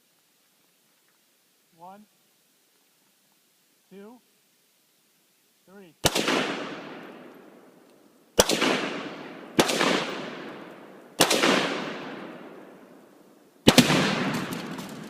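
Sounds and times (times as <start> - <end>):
rifle shots with rolling echo: 6.0 - 15.0.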